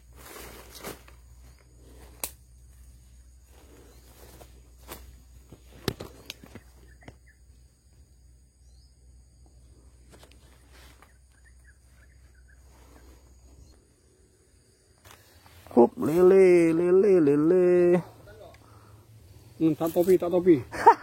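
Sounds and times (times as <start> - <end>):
faint bird chirps: 6.1 - 15.6.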